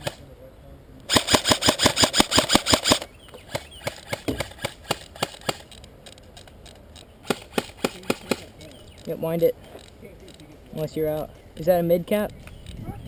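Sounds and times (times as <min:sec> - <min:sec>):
airsoft gun shots: 0:01.1 - 0:05.7, 0:07.2 - 0:08.5.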